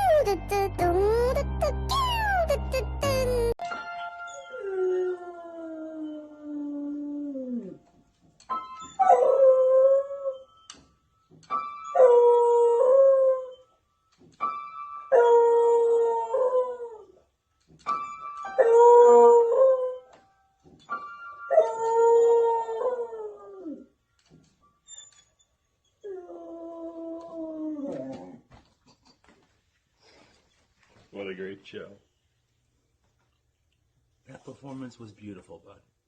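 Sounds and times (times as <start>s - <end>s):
held musical note: 0.0s - 3.7s
dog howling: 4.5s - 7.8s, 21.6s - 23.9s, 26.0s - 28.4s.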